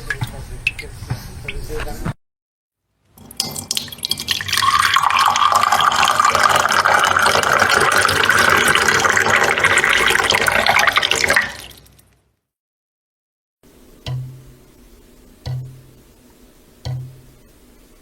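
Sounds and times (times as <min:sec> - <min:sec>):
water running into container: 0:03.2 - 0:12.1.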